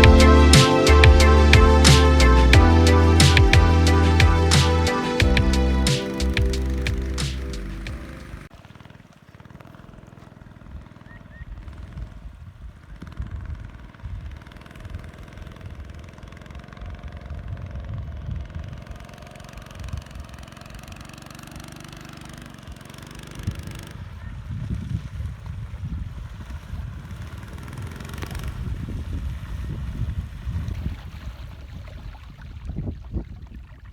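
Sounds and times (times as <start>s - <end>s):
small boat motor running: 5.2s - 10.7s.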